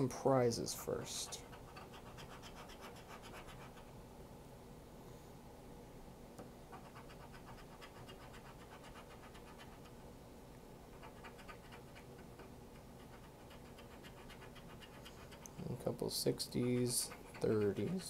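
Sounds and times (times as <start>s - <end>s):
scratch card scraping: 1.2s - 3.9s, 6.7s - 9.9s, 10.9s - 15.7s, 16.3s - 18.0s.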